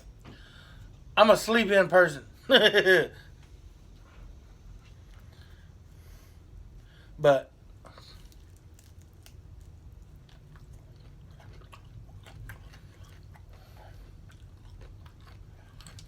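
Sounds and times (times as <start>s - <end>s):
man chewing food: 3.2s - 7.0s, 7.6s - 16.0s.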